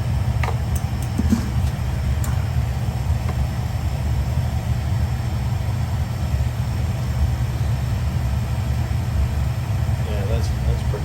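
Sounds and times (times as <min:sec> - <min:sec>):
boiler burner rumbling: 0:00.0 - 0:11.0.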